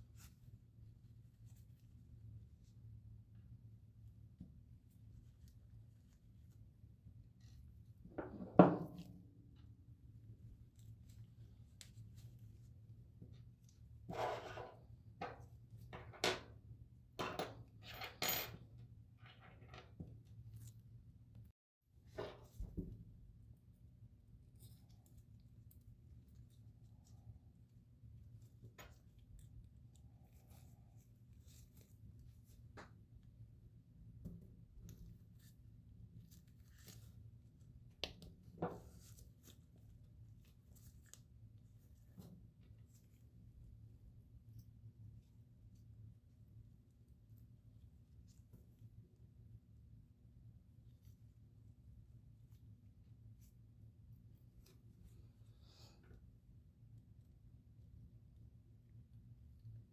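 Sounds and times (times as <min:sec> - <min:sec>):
faint rustling and scraping: 0:04.4 - 0:16.6, 0:17.5 - 0:33.3, 0:34.2 - 0:49.1.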